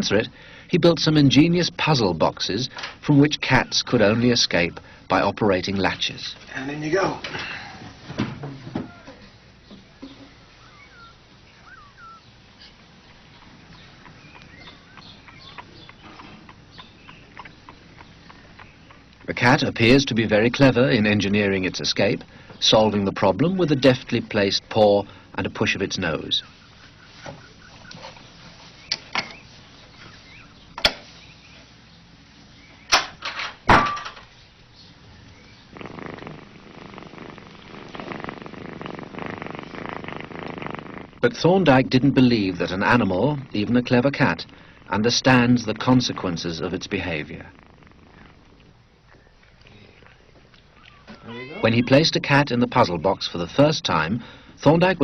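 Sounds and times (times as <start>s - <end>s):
short chirping calls: 9.9s - 19.5s.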